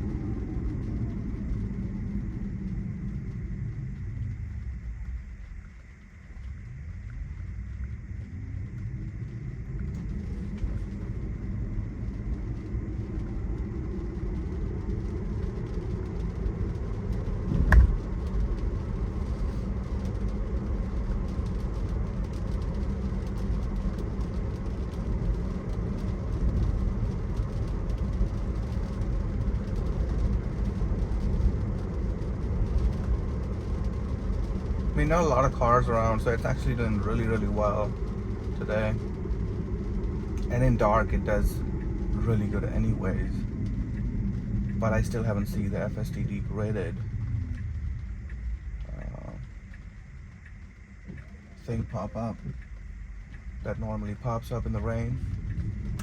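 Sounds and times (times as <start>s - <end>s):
tyre rumble on wet road: 0.0s - 56.0s
sharp thump: 17.5s - 18.0s.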